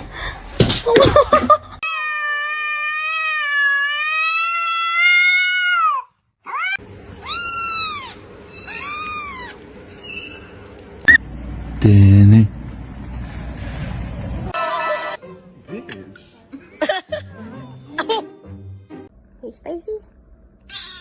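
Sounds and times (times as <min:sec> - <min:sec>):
cat yowling: 0:01.8 - 0:09.6.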